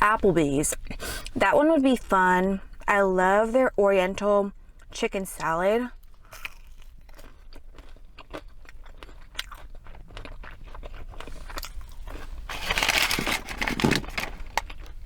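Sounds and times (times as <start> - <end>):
chewing with mouth clicks: 6.0 - 12.4
food crunching: 6.2 - 15.0.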